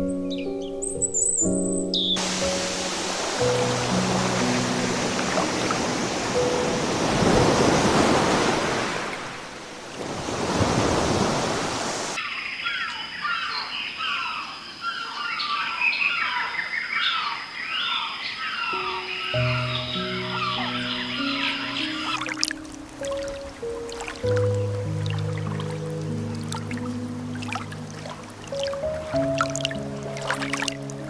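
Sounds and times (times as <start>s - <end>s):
piano music: 0.0s - 9.2s, 18.7s - 31.0s
rushing water noise: 2.2s - 12.2s, 19.3s - 31.0s
small birds chirping: 12.2s - 31.0s.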